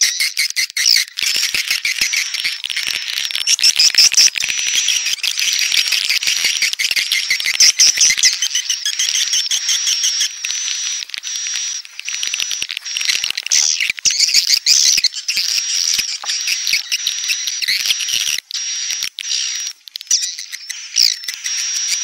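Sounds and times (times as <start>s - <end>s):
swiftlets chattering: 1.2s - 18.4s.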